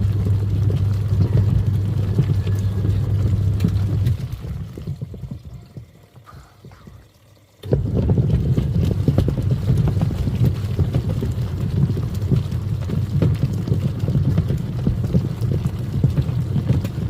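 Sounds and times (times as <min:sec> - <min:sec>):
washing machine motor humming: 0:00.0 - 0:17.0
water splashing: 0:00.6 - 0:10.9
water sloshing: 0:01.4 - 0:09.2.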